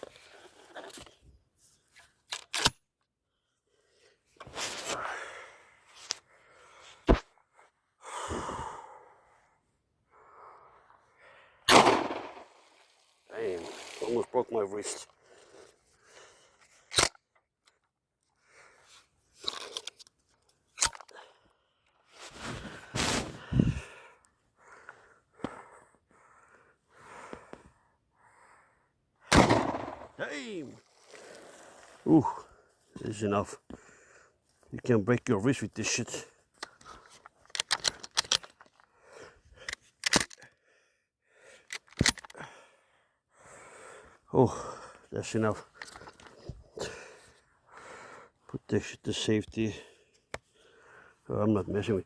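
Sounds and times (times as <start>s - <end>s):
shotgun shot: 11.7s - 12.6s, 29.3s - 30.2s
shotgun pump clicking: 37.4s - 38.6s, 41.7s - 42.4s.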